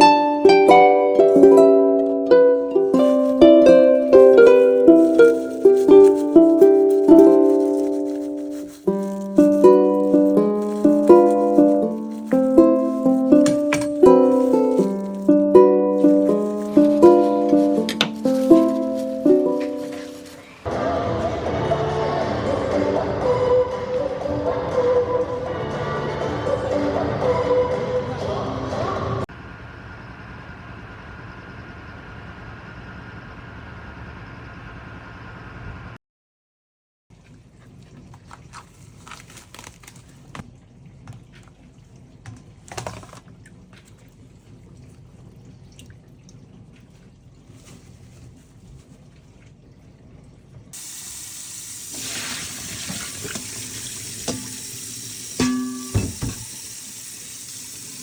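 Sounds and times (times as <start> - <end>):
utensils clicking and knocking: 4.0 - 17.1
tap running into sink: 51.9 - 58.0.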